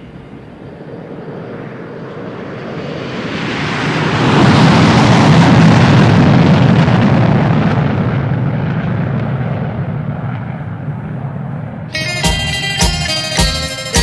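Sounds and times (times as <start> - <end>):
aircraft flyby sound effect: 0.0 - 6.3.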